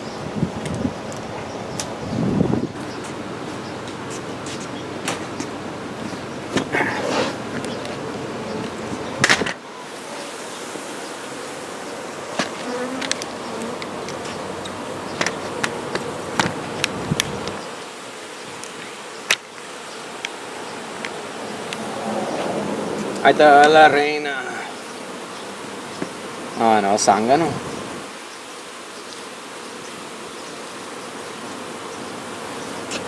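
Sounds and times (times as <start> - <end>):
honey bees buzzing: 0.0 - 33.0.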